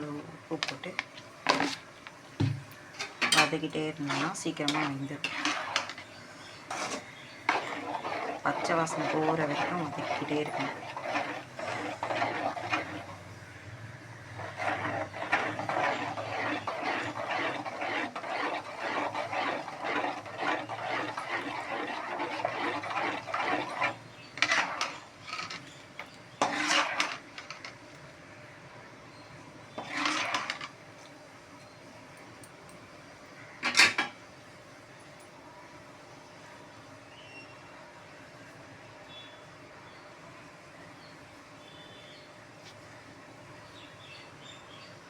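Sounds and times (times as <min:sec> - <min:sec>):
utensil scraping a pan: 0:00.6 - 0:27.8, 0:29.7 - 0:30.8, 0:33.6 - 0:34.2.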